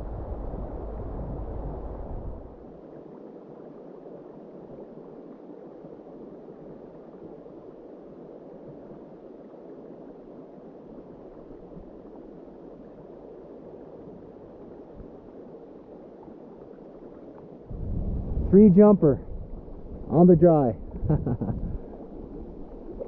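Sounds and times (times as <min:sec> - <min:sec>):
river current rushing: 0:17.6 - 0:21.1.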